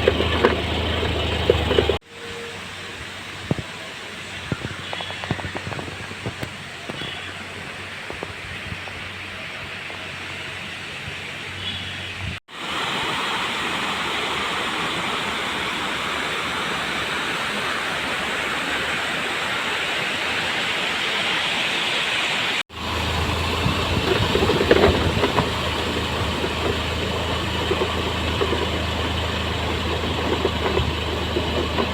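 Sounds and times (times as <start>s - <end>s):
waterfall rushing: 12.5s - 24.2s.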